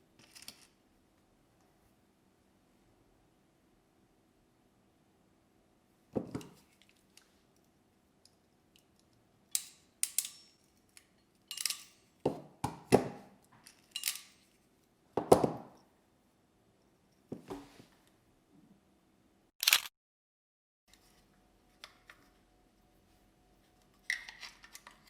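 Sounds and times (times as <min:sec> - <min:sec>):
knocks and metallic clinks: 0:11.5 - 0:12.1, 0:13.8 - 0:14.5.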